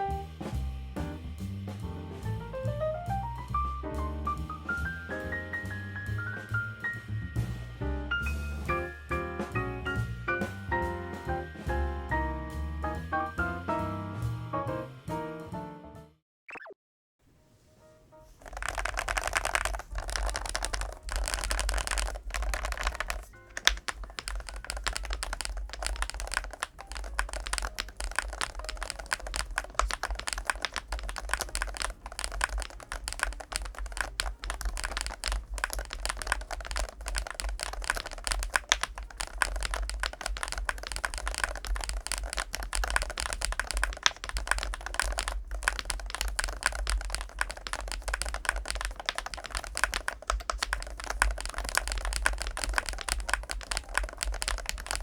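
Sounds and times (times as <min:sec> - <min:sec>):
keyboard keystroke clicks: 0:18.4 - 0:55.0.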